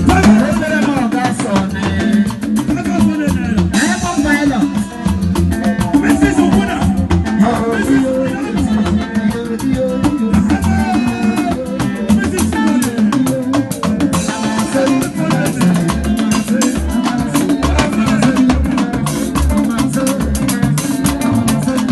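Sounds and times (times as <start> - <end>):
drum and percussion beat: 0.0 - 21.9
latin dance music: 0.0 - 21.9
person singing: 0.0 - 21.9
pulsing bass: 0.0 - 21.9.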